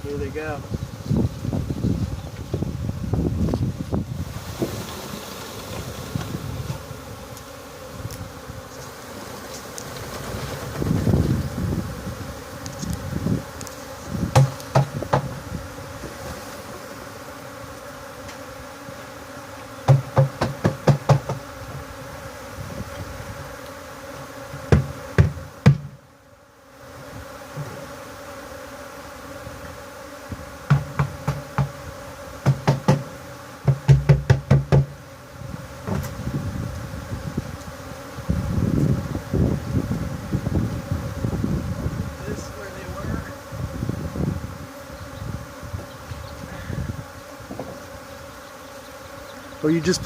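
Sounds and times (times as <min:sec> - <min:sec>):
bee colony buzzing: 0:00.0 - 0:50.0
bursts of rapid knocks: 0:32.4 - 0:34.9.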